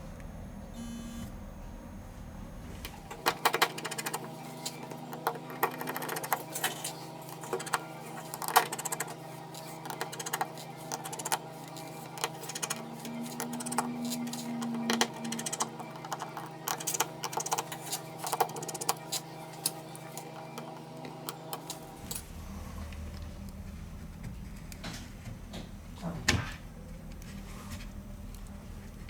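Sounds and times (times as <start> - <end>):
steady hum: 0.0 - 29.0
tools and parts clicking and tapping: 9.8 - 11.4.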